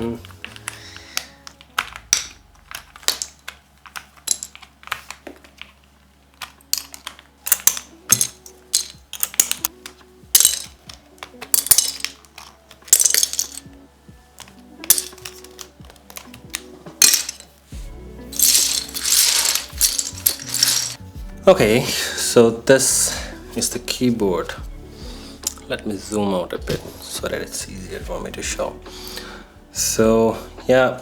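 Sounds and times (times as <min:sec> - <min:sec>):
keycaps clicking and rattling: 0:00.1 - 0:17.7, 0:18.3 - 0:21.2.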